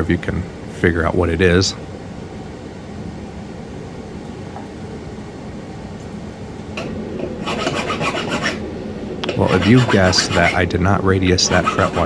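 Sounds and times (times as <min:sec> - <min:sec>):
steady background hum: 0:00.0 - 0:12.0
scraping or rubbing: 0:06.8 - 0:12.0.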